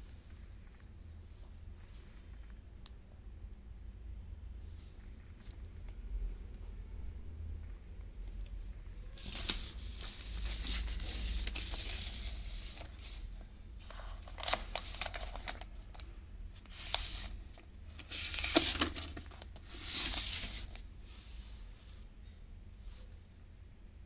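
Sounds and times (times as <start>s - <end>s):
packaging rubbing and crinkling: 9.2s - 20.8s.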